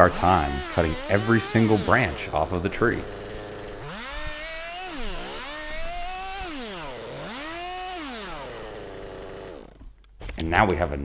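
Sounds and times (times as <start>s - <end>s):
chainsaw revving: 0.0s - 9.9s.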